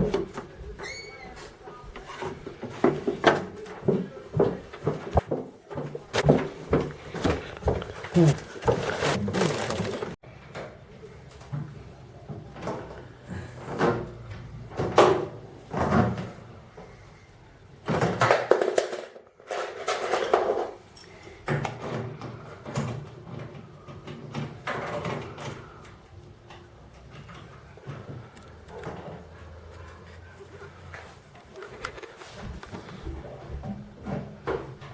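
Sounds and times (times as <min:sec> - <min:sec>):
packaging rustling: 0:07.3 - 0:10.2.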